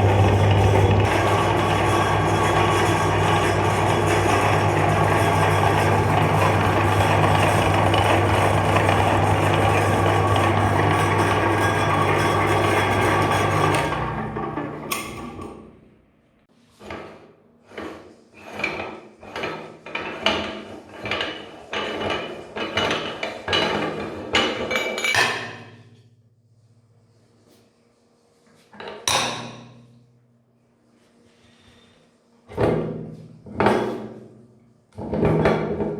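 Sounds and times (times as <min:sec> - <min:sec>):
meat grinder motor humming: 0:00.0 - 0:15.4.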